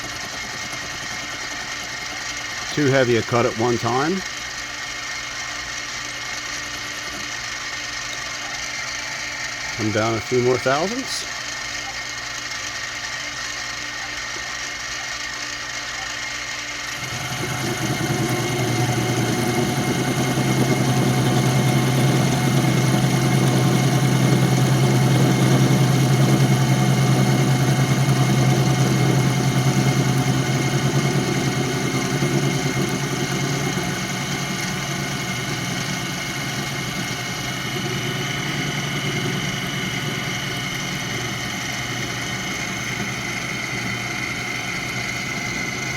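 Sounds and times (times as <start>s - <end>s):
mini mill spindle running: 0.0s - 45.9s
tool bit cutting spinning metal: 0.0s - 45.9s.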